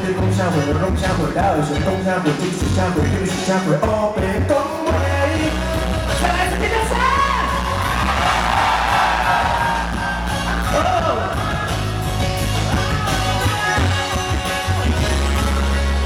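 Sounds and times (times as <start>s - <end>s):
live rock band playing: 0.0s - 16.0s
crowd screaming and cheering: 6.7s - 13.7s.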